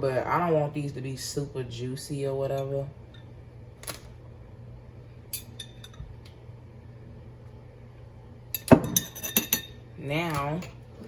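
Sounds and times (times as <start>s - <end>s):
steady low hum: 0.0s - 11.0s
spoon clinking against jar and dishes: 5.4s - 6.0s, 8.6s - 9.8s.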